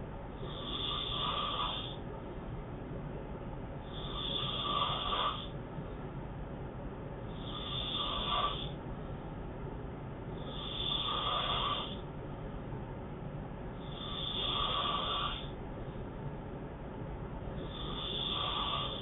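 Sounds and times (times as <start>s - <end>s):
man snoring: 0.4s - 2.0s, 3.8s - 5.5s, 7.3s - 8.8s, 10.4s - 12.0s, 13.8s - 15.5s, 17.6s - 19.0s.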